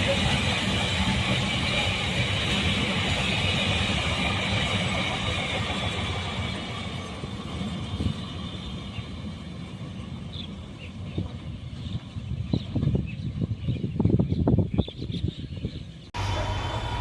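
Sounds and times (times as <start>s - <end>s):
train rumbling past: 0.0s - 13.6s, 16.0s - 17.0s
rail and wheel hiss: 0.0s - 14.0s, 15.9s - 17.0s.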